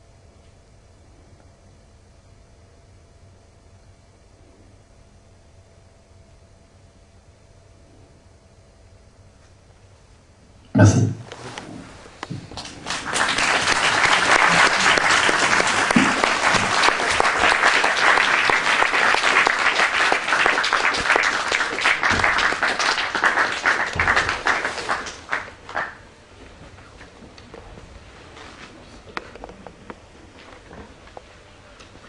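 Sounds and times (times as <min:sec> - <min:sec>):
audience applauding: 0:12.6 - 0:26.0.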